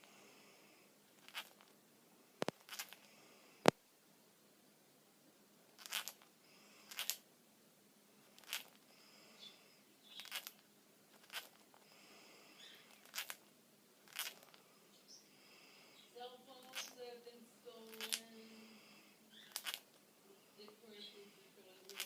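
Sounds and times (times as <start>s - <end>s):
small animal breathy squeaks: 1.2s - 1.6s, 2.6s - 3.1s, 5.8s - 6.2s, 6.8s - 7.2s, 8.3s - 11.6s, 12.2s - 13.4s, 14.1s - 15.3s, 17.9s - 19.9s, 20.6s - 22.0s.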